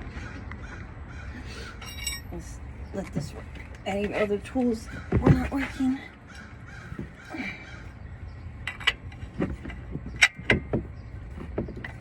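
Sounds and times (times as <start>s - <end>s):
low steady rumble: 0.0s - 12.0s
wrench clinking against metal: 1.8s - 2.3s.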